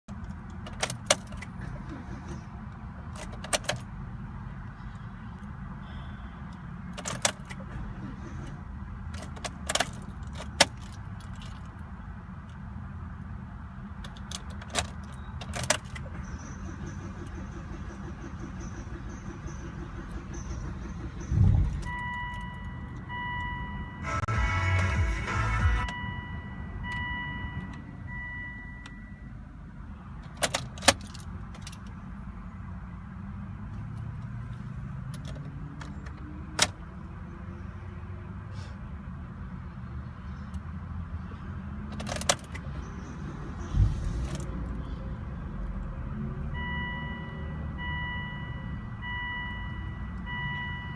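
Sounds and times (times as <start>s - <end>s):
car keys jangling: 0.1s - 2.2s, 3.0s - 3.9s, 6.9s - 7.7s, 9.1s - 11.8s, 14.0s - 16.5s, 21.0s - 23.6s, 30.2s - 31.9s, 34.0s - 36.8s, 41.9s - 42.8s
steady low rumble: 19.6s - 22.8s, 43.5s - 45.9s
loud rumbling: 20.0s - 22.0s.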